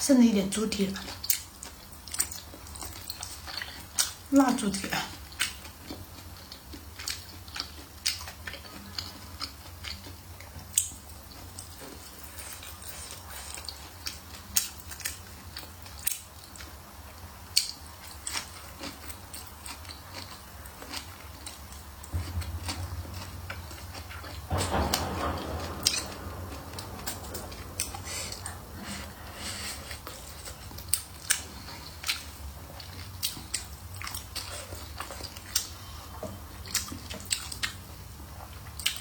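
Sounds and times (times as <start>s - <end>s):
biting and chewing food: 5.1s - 25.7s, 29.8s - 39.0s.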